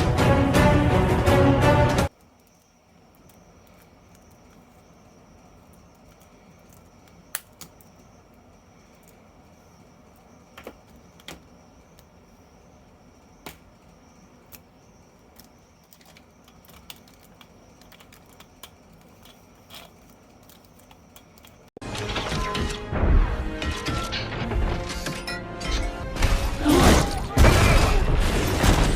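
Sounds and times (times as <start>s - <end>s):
crashing sounds: 26.1s - 28.9s.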